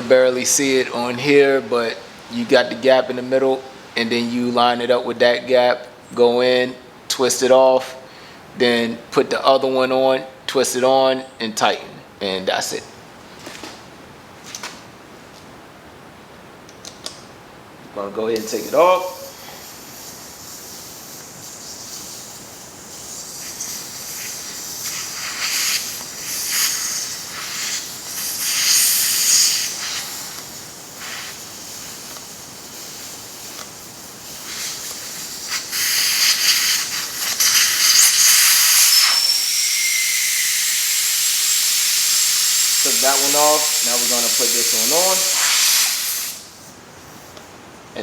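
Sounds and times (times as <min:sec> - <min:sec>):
air hissing out of tire valve: 0:18.4 - 0:47.4.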